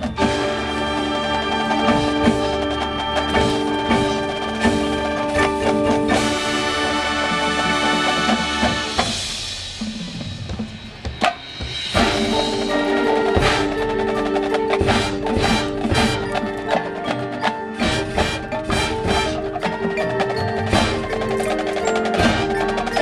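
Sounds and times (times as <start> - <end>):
brass and woodwinds playing chords: 0.0 - 9.2, 12.0 - 23.0
marching drums and percussion: 0.0 - 23.0.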